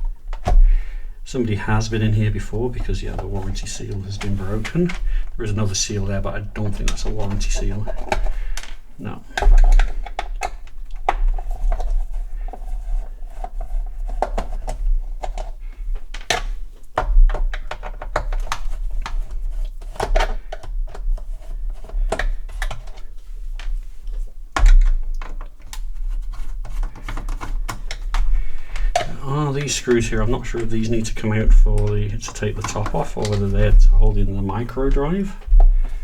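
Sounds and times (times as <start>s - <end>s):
low steady hum: 0.0s - 36.0s
plastic case clicks and knocks: 0.3s - 0.7s, 6.6s - 12.0s, 14.2s - 19.3s, 24.6s - 29.2s.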